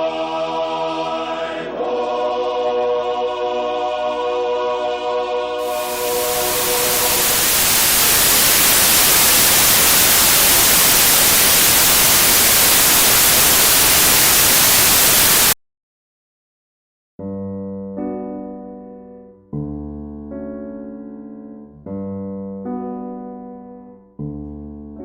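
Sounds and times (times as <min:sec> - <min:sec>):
choir singing: 0:00.0 - 0:09.2
loud tv static: 0:05.6 - 0:15.6.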